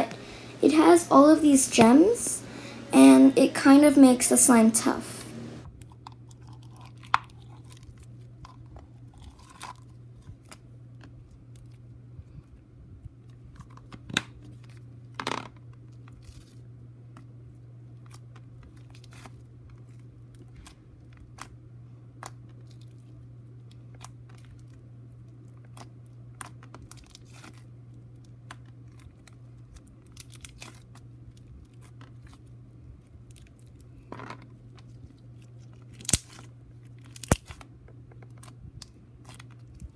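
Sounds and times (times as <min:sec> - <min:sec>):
steady low hum: 0:00.0 - 0:05.6.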